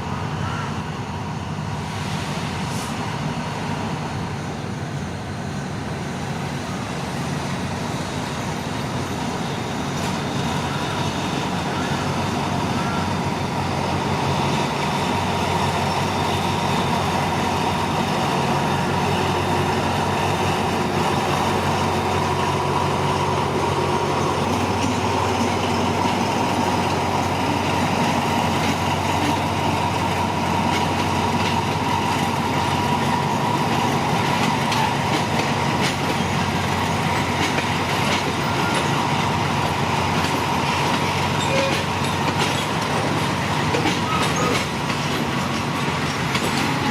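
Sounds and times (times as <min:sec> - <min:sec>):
train carriages rolling: 0:06.0 - 0:46.9
diesel engine droning: 0:08.0 - 0:34.9.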